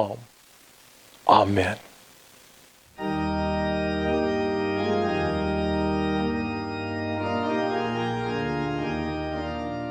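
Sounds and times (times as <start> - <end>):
organ playing sustained chords: 3.0 - 9.9.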